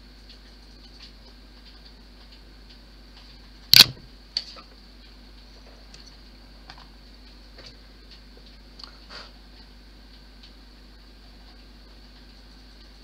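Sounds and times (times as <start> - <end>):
faint scattered ticks: 0.0 - 3.6, 4.3 - 13.0
sharp hard clack: 3.7 - 4.1
small click: 3.7 - 4.5.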